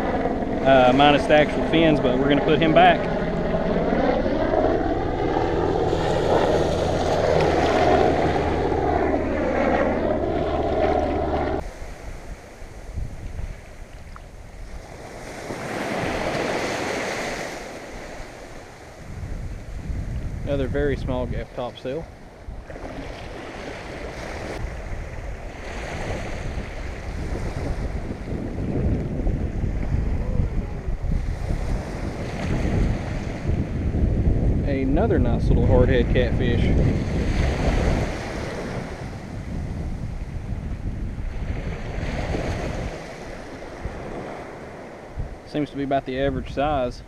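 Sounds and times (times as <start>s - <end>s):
engine droning: 0.0s - 11.7s
wind buffeting microphone: 0.0s - 47.0s
surf washing onto beach: 0.6s - 3.1s, 11.1s - 21.9s, 41.3s - 46.8s.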